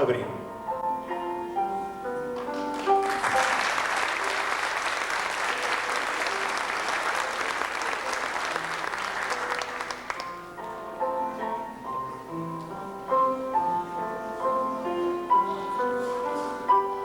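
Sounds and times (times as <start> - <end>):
soft piano music: 0.0 - 17.0
audience applauding: 2.4 - 10.4.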